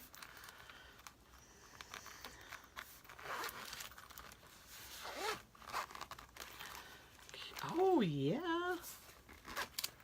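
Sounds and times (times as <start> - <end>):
zipper being pulled open: 1.8 - 6.8, 9.3 - 10.0.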